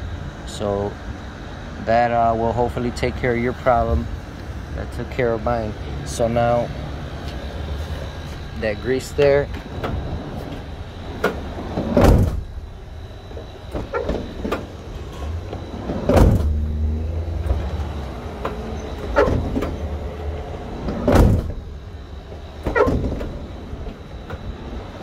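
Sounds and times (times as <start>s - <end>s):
door rolling rumble: 4.9s - 25.0s
sliding van door thuds: 9.2s - 25.0s.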